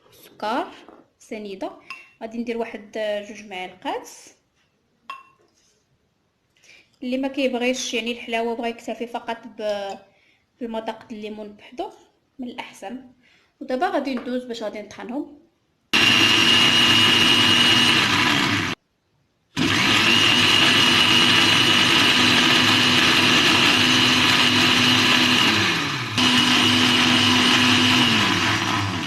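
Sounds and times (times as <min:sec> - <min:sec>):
electric blender running: 0:16.0 - 0:18.8, 0:19.6 - 0:29.0.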